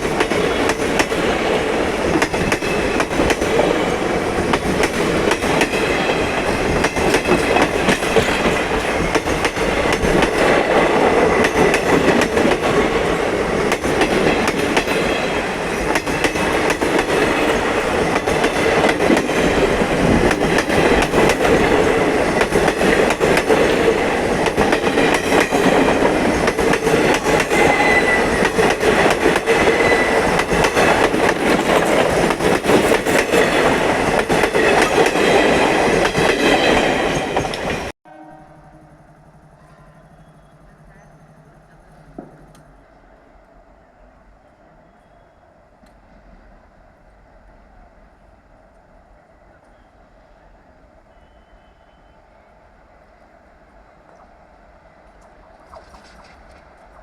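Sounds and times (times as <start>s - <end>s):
train running over rails: 0.0s - 57.0s
faint high wheel squeal: 27.5s - 28.5s, 38.3s - 42.4s, 44.7s - 45.6s, 51.1s - 52.6s.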